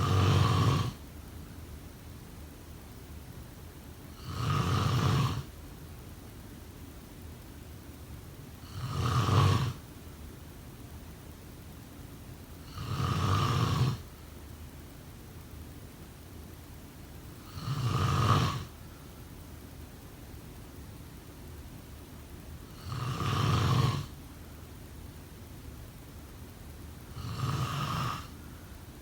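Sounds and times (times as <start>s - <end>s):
person snoring: 0.0s - 1.0s, 4.2s - 5.5s, 8.6s - 9.8s, 12.7s - 14.0s, 17.4s - 18.7s, 22.7s - 24.1s, 27.1s - 28.4s
steady low hum: 0.0s - 29.0s.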